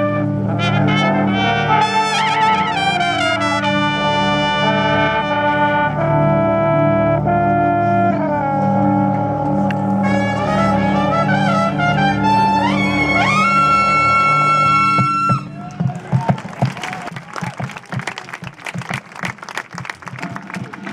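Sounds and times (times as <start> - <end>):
brass ensemble playing chords: 0.0 - 15.7.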